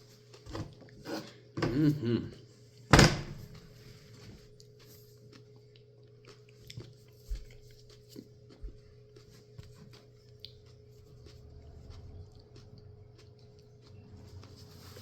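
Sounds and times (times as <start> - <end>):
faint electrical hum: 0.0 - 15.0
chewing and mouth clicks: 4.5 - 15.0.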